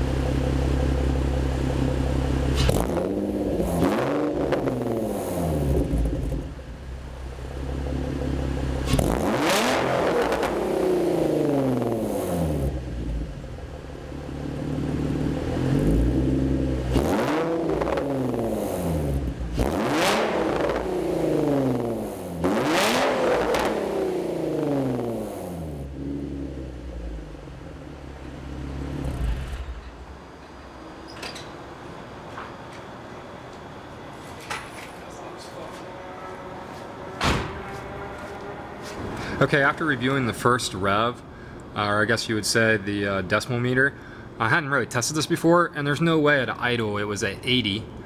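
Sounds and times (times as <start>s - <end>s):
car engine revving: 0.0s - 30.9s, 35.3s - 41.7s.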